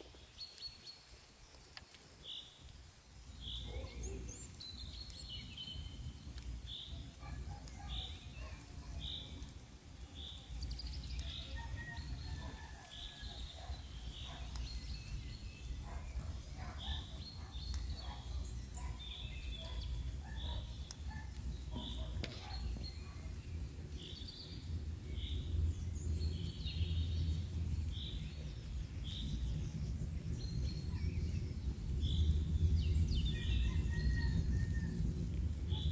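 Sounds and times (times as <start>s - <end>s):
faint chirps: 3.3s - 6.0s
steady low rumble: 13.9s - 35.9s.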